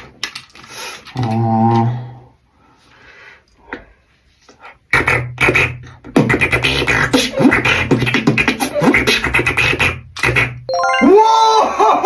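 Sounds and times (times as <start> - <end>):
beatboxing: 4.6 - 10.7.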